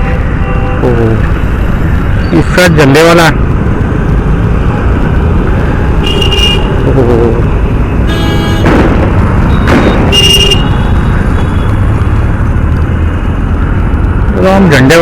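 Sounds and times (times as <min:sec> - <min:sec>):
wind rumbling on microphone: 0:00.0 - 0:15.0
vehicle horn honks: 0:06.0 - 0:06.7, 0:08.1 - 0:08.8, 0:09.5 - 0:11.0.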